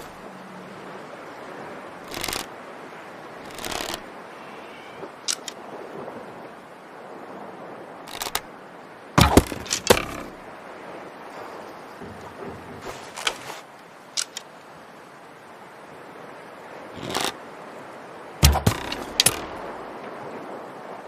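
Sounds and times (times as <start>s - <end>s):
arrow heavy thump: 9.2s - 10.4s, 18.4s - 19.8s
arrow swish: 18.4s - 19.7s.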